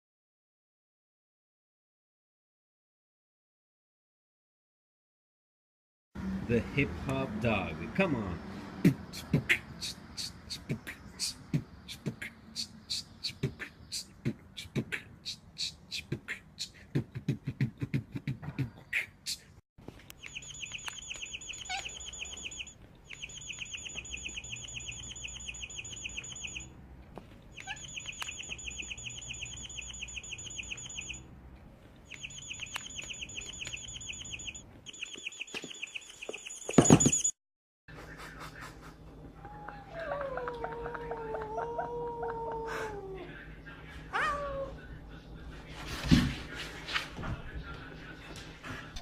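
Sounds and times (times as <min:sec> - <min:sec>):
beatbox rhythmic sounds: 0:08.8 - 0:19.5
bird chattering trill: 0:09.1 - 0:16.1, 0:20.2 - 0:26.7, 0:27.5 - 0:31.2, 0:32.1 - 0:36.7.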